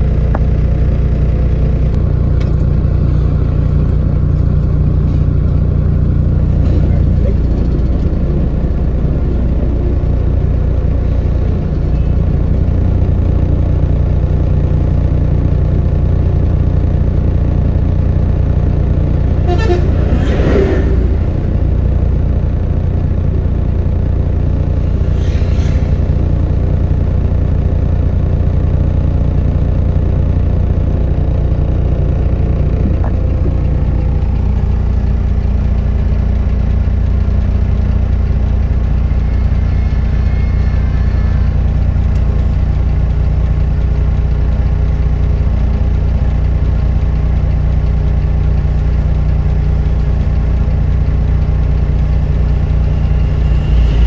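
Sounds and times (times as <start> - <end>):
excavator diesel engine running: 0.0 - 54.0
brief loud noise: 51.9 - 54.0.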